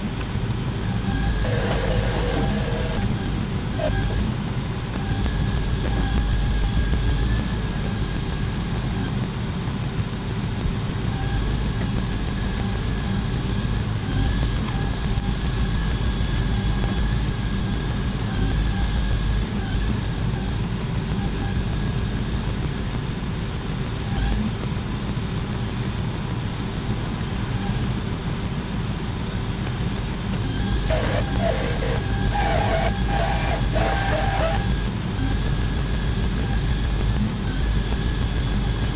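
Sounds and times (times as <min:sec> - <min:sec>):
thin high whine: 0:00.0 - 0:09.2, 0:30.3 - 0:38.9.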